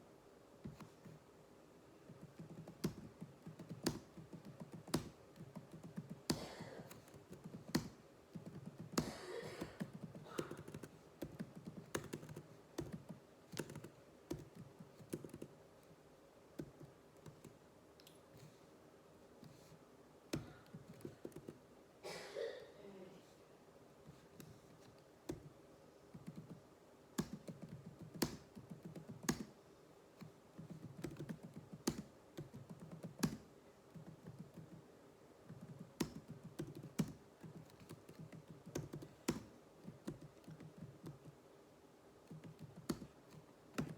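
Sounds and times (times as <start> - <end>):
keyboard typing: 2.1 - 15.6, 16.6 - 17.6, 20.3 - 21.6, 26.1 - 26.6, 27.2 - 29.5, 30.2 - 34.8, 35.5 - 41.4, 42.2 - 43.9.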